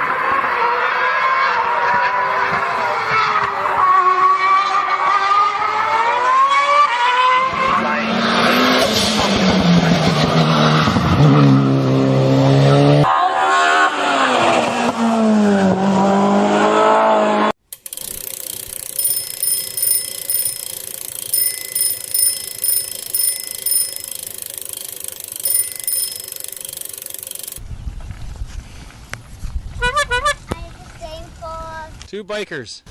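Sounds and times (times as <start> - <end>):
bicycle bell ringing: 17.8 - 27.6.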